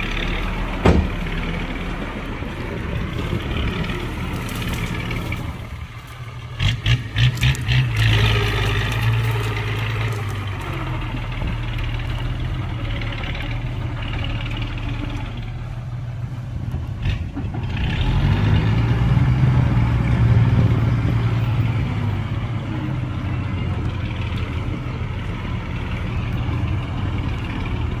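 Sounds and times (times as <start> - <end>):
heavy diesel machinery running: 0.0 - 28.0
sharp knocks: 0.8 - 1.4.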